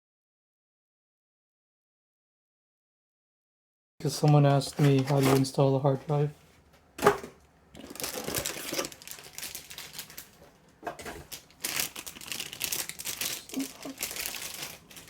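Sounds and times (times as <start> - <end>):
objects clicking and rustling: 7.0 - 12.6.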